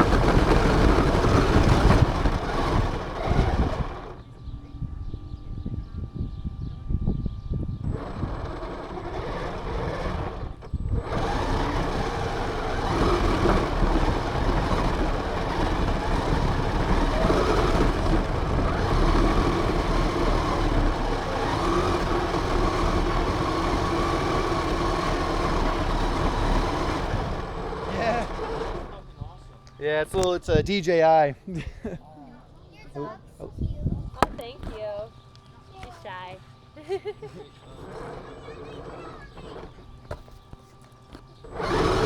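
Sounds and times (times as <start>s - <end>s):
rumble from tyres: 0.0s - 4.5s, 7.7s - 30.6s, 37.6s - 42.0s
rc car motor whining: 0.0s - 31.4s, 32.4s - 42.0s.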